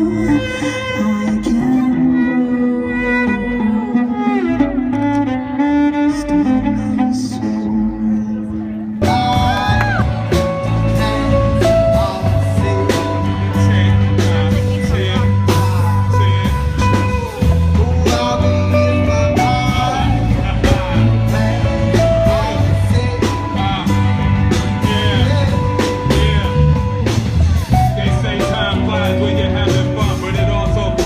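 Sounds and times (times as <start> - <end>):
bass guitar: 0.0 - 31.0
electric guitar: 0.0 - 31.0
person singing: 0.0 - 31.0
steady drum beat: 9.0 - 31.0.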